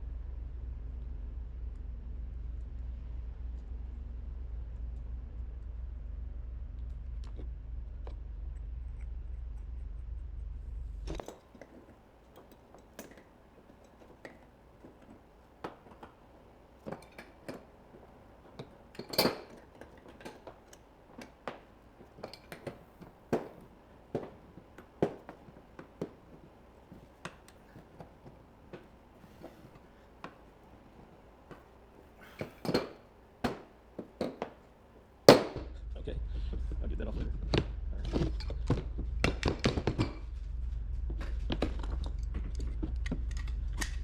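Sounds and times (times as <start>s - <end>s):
metal fittings and tools clinking: 11.2s - 35.6s.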